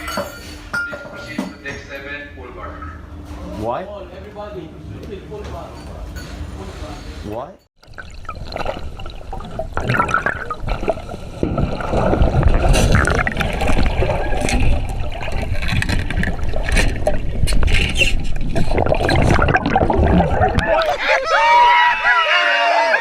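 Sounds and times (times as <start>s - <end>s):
rushing sloshing water: 7.8s - 21.2s
splashes: 7.8s - 21.2s.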